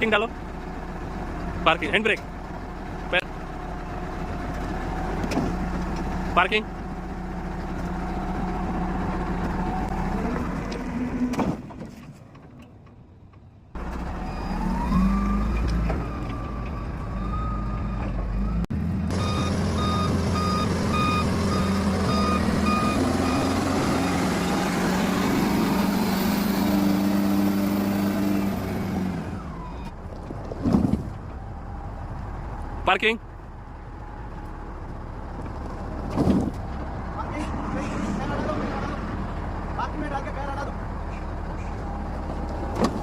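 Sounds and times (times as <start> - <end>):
diesel engine running: 0.0 - 43.0
engine whine revving: 13.8 - 32.8, 33.5 - 43.0
reversing alarm beeping: 16.2 - 24.2.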